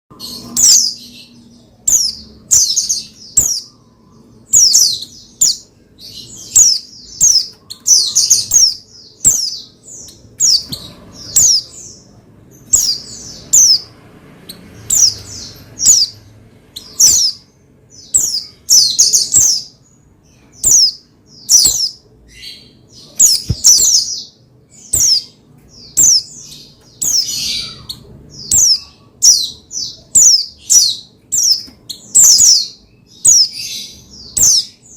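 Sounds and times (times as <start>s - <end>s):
bird chirping: 0.1s - 34.9s.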